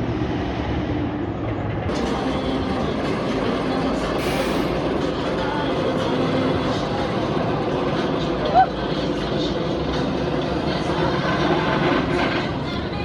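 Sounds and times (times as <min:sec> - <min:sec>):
roller coaster rumbling on track: 0:00.0 - 0:13.0
brief hiss: 0:04.2 - 0:04.9.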